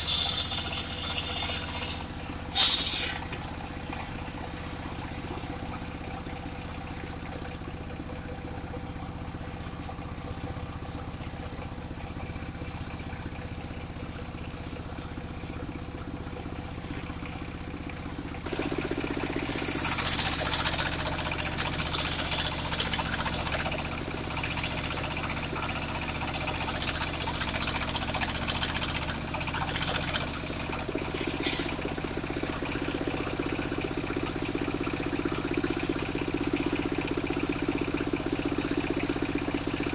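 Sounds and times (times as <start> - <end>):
loud high hiss: 0.0 - 3.2, 19.4 - 31.8
sawmill engine running: 0.0 - 3.2, 18.5 - 35.3.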